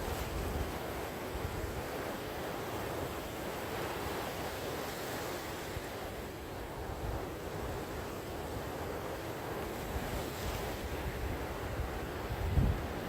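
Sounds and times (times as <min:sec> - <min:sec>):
ocean waves washing on shore: 0:00.0 - 0:13.0
wind on microphone: 0:11.1 - 0:13.0.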